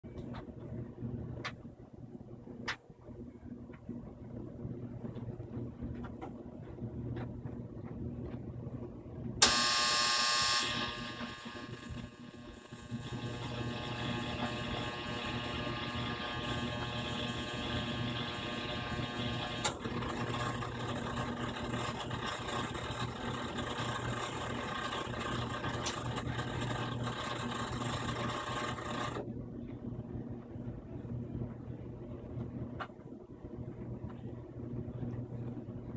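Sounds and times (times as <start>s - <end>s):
loud rough buzz: 9.4s - 23.2s
dryer humming: 9.4s - 29.2s.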